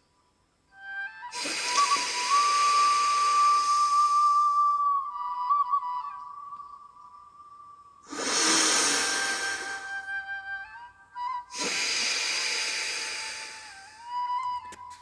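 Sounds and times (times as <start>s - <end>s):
soft flute music: 0.7s - 15.0s
hissing breaths through nostril: 1.3s - 4.7s, 8.0s - 10.0s, 11.5s - 14.1s.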